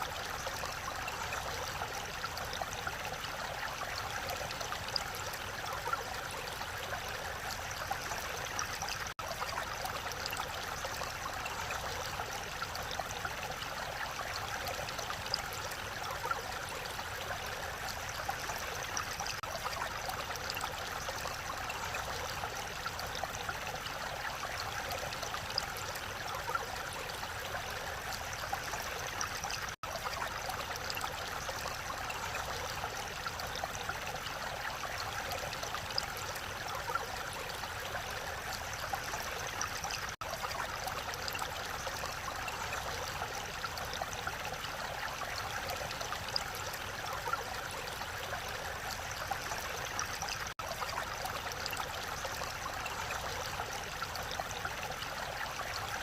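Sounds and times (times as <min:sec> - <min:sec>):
mountain stream flowing: 0:00.0 - 0:56.0.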